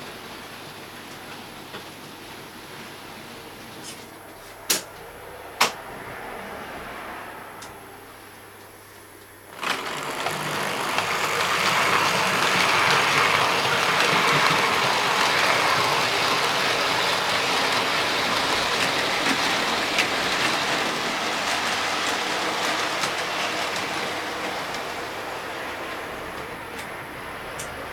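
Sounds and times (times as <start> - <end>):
model train rattling on track: 9.5 - 27.9.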